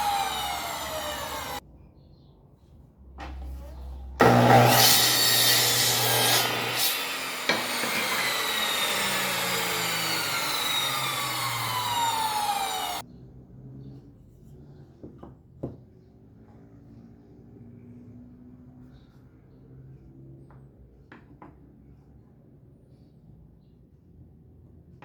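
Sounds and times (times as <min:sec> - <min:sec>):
power saw cutting wood: 0:00.0 - 0:01.6, 0:04.2 - 0:13.0.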